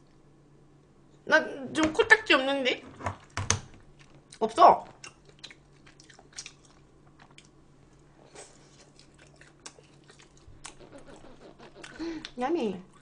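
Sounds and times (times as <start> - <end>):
close-miked chewing: 3.9 - 13.0
mouth clicks and smacks: 8.9 - 12.4.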